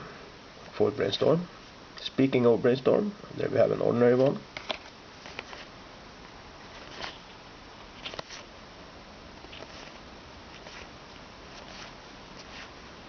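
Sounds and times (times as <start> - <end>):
steady hiss: 0.0 - 13.0
cards rustling and flicking: 4.5 - 5.8, 6.6 - 8.5, 9.4 - 12.8.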